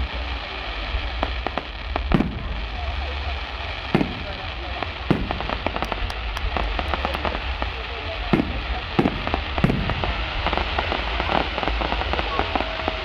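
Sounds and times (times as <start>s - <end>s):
steady low rumble: 0.0s - 12.4s
fireworks bangs and crackles: 0.0s - 13.0s.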